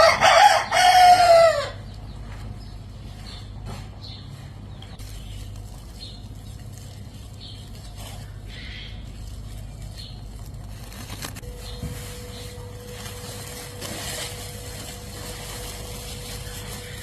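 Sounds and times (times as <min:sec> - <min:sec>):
steady low hum: 0:00.0 - 0:17.0
birds chirping: 0:01.3 - 0:17.0.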